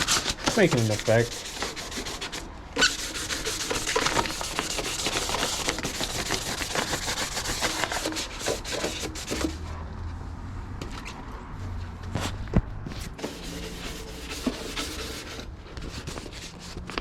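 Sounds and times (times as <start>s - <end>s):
sandpaper rubbing sheet metal: 0.0s - 9.6s, 12.9s - 17.0s.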